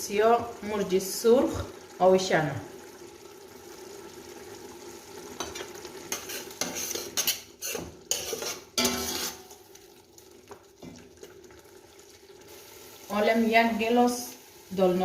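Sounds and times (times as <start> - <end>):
vegetables sizzling in oil: 0.0 - 15.0
utensil scraping pan: 5.5 - 9.6.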